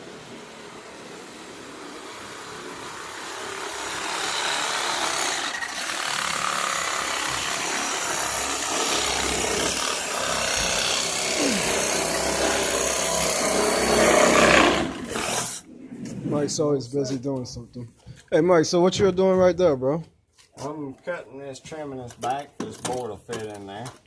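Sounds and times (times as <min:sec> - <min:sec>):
saw cutting wooden board: 0:00.0 - 0:15.7.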